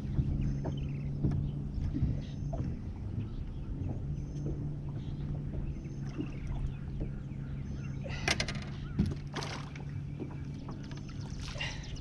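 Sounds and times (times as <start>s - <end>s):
boat low hum: 0.0s - 12.0s
water splashing: 8.1s - 12.0s.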